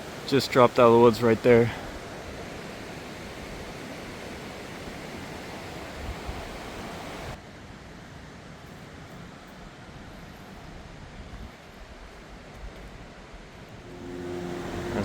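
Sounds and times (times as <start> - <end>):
raging river rushing: 0.0 - 7.4, 13.5 - 15.0.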